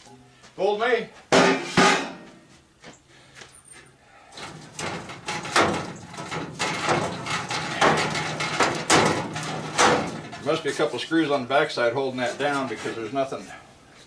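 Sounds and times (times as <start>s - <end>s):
sheet metal knocking and scraping: 1.3s - 2.4s, 4.4s - 10.9s.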